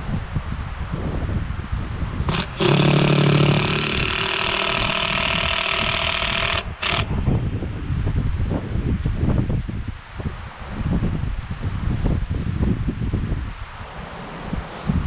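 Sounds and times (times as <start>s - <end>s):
power tool motor running: 2.3s - 7.1s.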